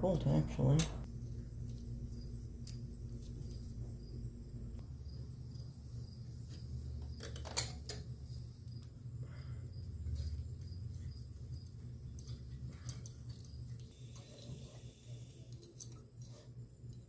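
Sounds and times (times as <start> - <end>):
steady low hum: 0.0 - 17.0
metal tools clicking: 12.1 - 14.5, 15.5 - 17.0.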